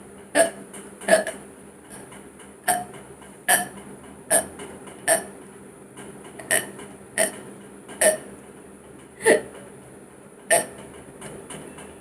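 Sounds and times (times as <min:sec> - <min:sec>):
woman hiccuping: 0:09.2 - 0:09.5.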